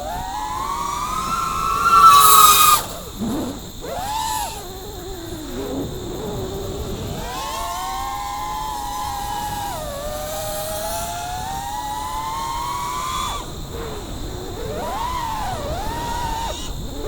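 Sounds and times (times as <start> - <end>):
drone motors and propellers whining: 0.0 - 17.0.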